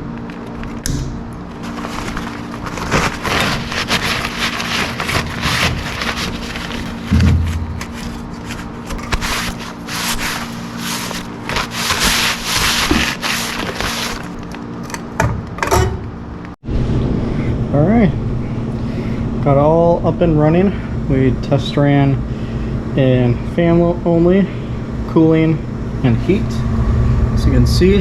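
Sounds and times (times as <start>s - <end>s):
steady low hum: 0.0s - 28.0s
rubbing and scraping strokes: 1.6s - 14.4s
short heavy thump: 7.0s - 8.3s.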